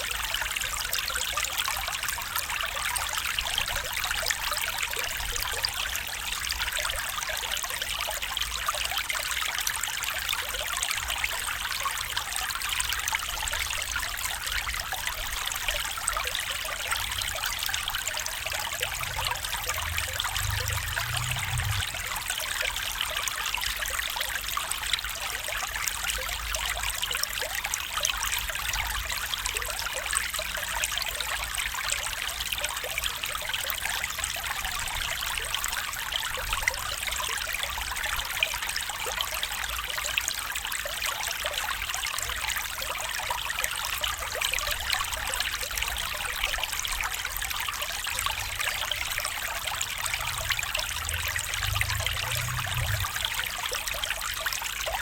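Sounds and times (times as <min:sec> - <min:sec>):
stream water flowing: 0:00.0 - 0:55.0
faint low rumble: 0:17.3 - 0:23.0, 0:48.2 - 0:54.0.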